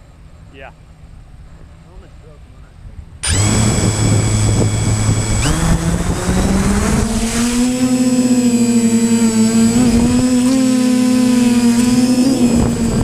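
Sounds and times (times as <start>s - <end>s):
drone propellers buzzing whine: 3.0s - 13.0s.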